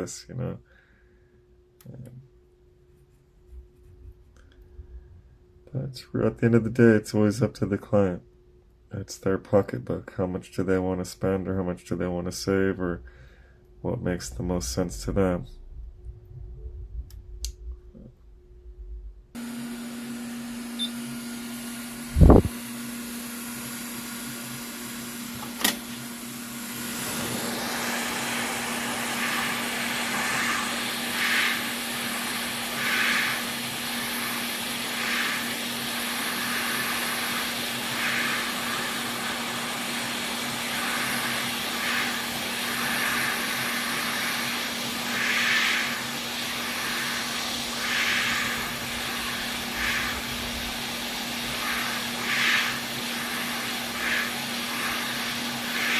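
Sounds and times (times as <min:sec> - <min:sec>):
low steady hum: 0:00.0 - 0:55.9
air rush from motorised tool: 0:19.4 - 0:55.9
sharp click: 0:25.4 - 0:25.8.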